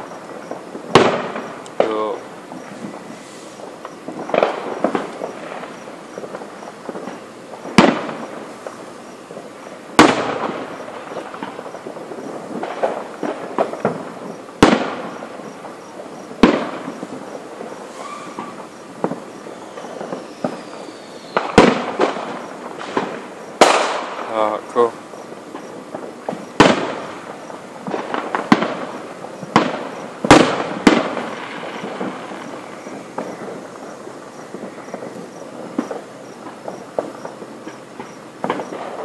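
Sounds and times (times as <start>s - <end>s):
crackling pops: 0.0s - 39.0s
firework shells booming: 0.0s - 39.0s
falling firework whistle: 2.6s - 9.3s, 13.7s - 24.2s, 26.3s - 39.0s.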